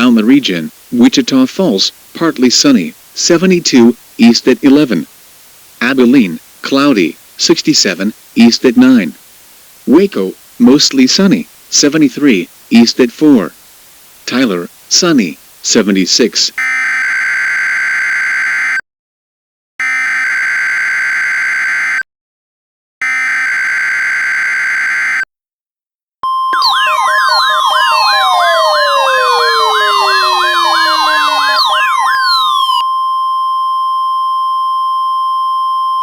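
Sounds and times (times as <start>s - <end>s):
steady warning alarm tone: 23.0s - 25.2s, 26.2s - 36.0s
wailing siren sweeps: 26.5s - 32.9s.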